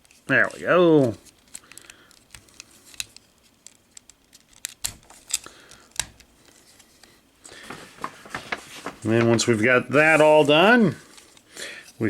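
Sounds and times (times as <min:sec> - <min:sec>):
plastic toy parts clicking: 0:01.5 - 0:06.3.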